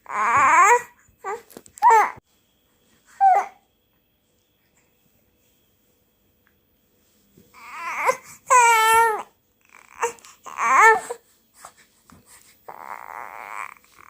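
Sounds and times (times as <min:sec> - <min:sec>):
baby cooing and babbling: 0:00.0 - 0:02.2, 0:07.6 - 0:11.2, 0:12.7 - 0:14.0.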